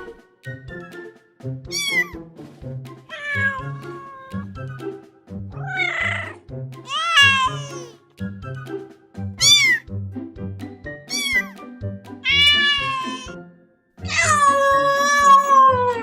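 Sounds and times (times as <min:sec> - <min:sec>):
background music: 0:00.0 - 0:16.0
cat meowing: 0:01.7 - 0:02.2, 0:03.1 - 0:04.5, 0:05.6 - 0:07.9, 0:09.4 - 0:09.8, 0:11.1 - 0:11.6, 0:12.2 - 0:13.4, 0:14.1 - 0:16.0.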